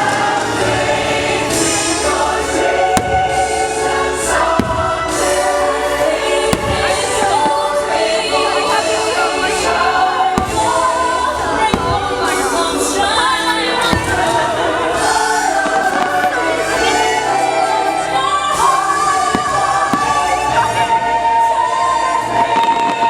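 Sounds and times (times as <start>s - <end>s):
orchestral music with choir: 0.0s - 23.0s
firework bangs: 1.4s - 17.0s, 18.6s - 21.0s.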